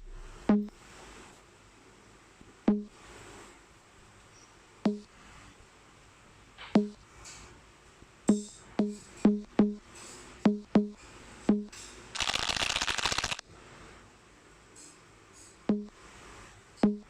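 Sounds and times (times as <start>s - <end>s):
dense rattling burst: 12.2s - 13.4s.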